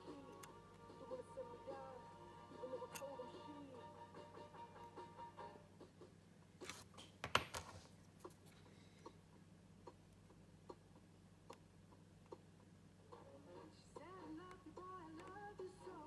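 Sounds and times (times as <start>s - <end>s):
steady low hum: 7.8s - 16.0s.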